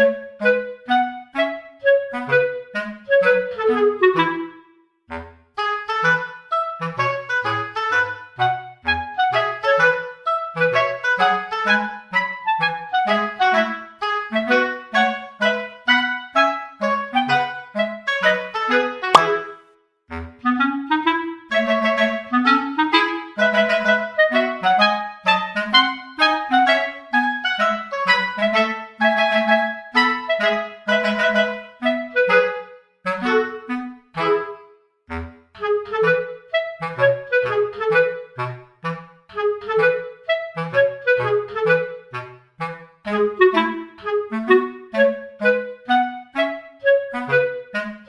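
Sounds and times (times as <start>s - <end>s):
bouncy staccato melody: 19.1s - 20.3s.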